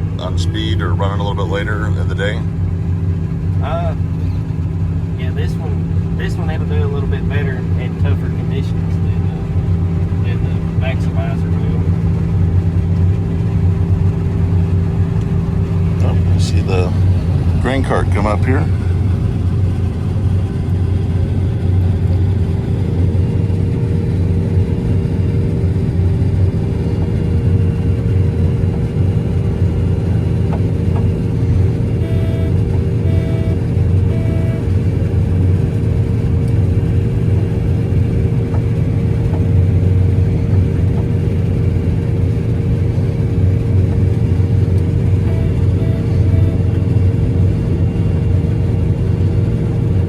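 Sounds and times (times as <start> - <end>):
combine harvester engine drone: 0.0 - 50.0
short electronic beeps: 32.0 - 34.7, 45.2 - 46.8.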